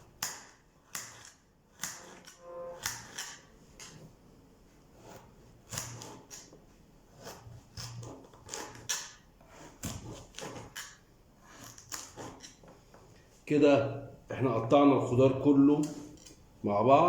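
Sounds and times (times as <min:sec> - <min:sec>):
knife chopping on cutting board: 0:00.0 - 0:03.2, 0:05.0 - 0:06.5, 0:07.2 - 0:12.6.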